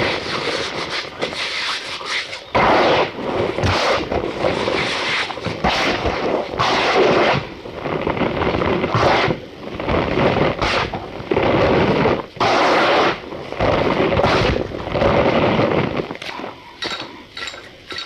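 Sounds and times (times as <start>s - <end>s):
light clinks: 16.8s - 18.0s.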